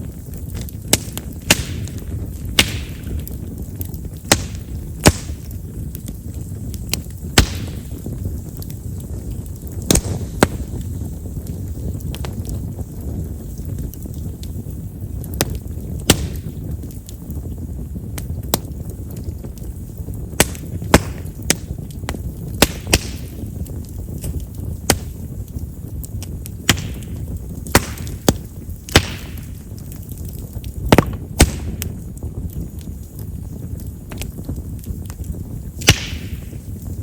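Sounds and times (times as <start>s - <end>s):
campfire crackling: 0.0s - 37.0s
low rumble of flames: 0.0s - 37.0s
sharp wood pops: 0.5s - 5.6s, 6.9s - 7.9s, 9.8s - 10.7s, 15.4s - 16.4s, 20.4s - 23.4s, 24.9s - 25.2s, 26.6s - 30.2s, 30.9s - 31.9s, 35.8s - 36.5s.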